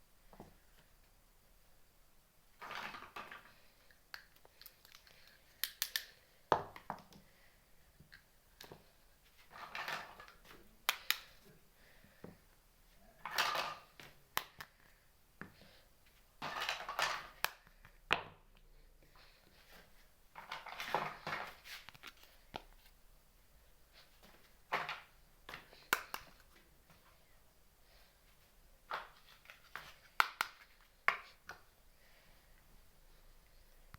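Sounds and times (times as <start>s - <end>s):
toy pieces clicking and tapping: 3.9s - 7.2s
rustling and scraping: 8.7s - 11.6s, 19.2s - 23.0s.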